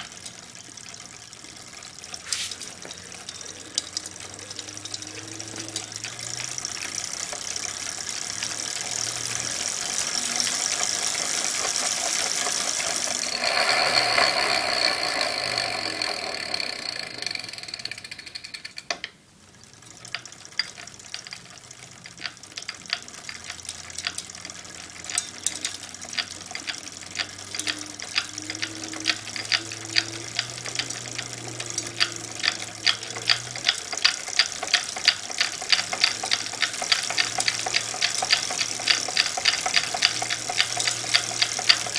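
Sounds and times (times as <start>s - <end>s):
bike drivetrain creaking and clicking: 0.0s - 41.9s
steady rushing hiss: 2.2s - 13.5s.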